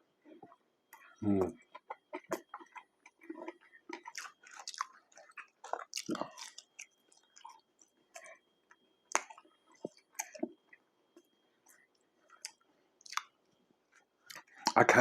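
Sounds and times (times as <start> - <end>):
person chewing food: 0.0 - 14.8
mouth clicks and smacks: 9.1 - 10.6, 12.4 - 13.3.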